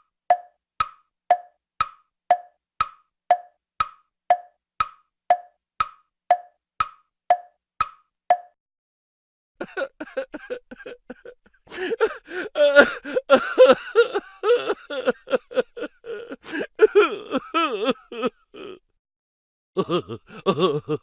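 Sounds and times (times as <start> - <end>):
person laughing in bursts: 9.6 - 18.8, 19.8 - 21.0.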